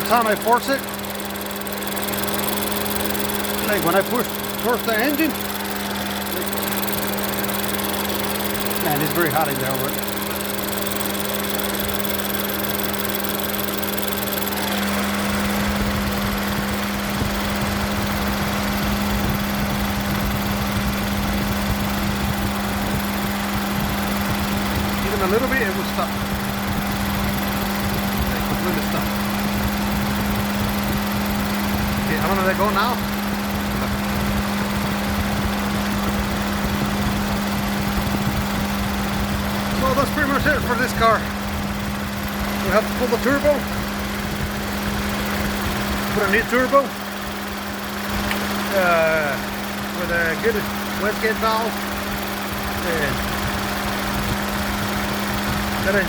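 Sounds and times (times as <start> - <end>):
car engine running: 0.0 - 56.0.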